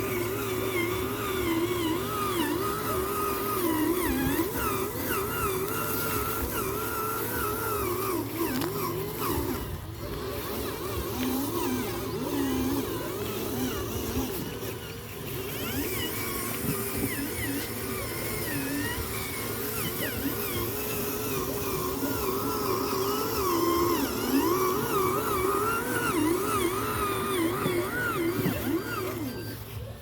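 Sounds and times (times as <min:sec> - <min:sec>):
electric motors whining: 0:00.0 - 0:30.0.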